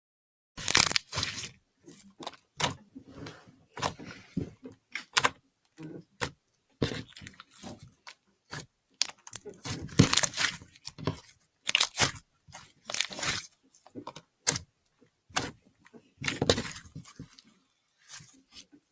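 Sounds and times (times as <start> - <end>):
slime squished by hand: 0.6 - 2.8, 5.0 - 14.7.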